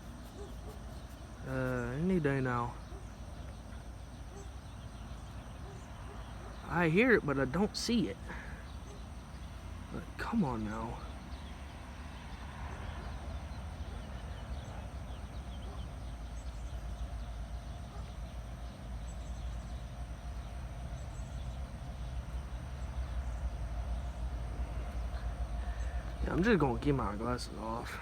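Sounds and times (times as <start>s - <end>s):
faint steady tone: 0.0s - 28.0s
freight train rumble: 12.9s - 28.0s.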